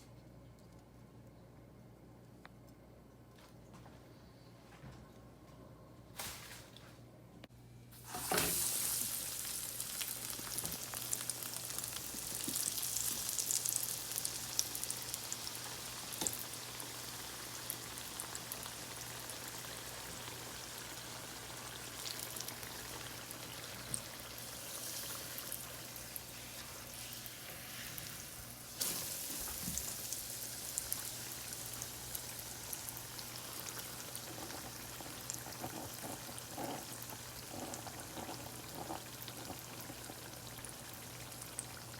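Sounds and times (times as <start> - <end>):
hot oil sizzling in a fryer: 8.0 - 41.9.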